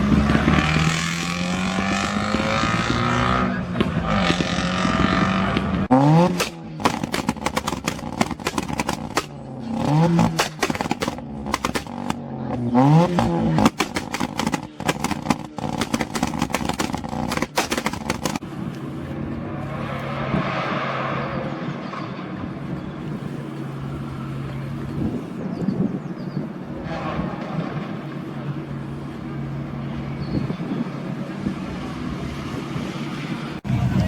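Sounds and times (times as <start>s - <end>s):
car engine revving: 0.0s - 18.4s
exhaust pops and crackles: 0.0s - 18.8s.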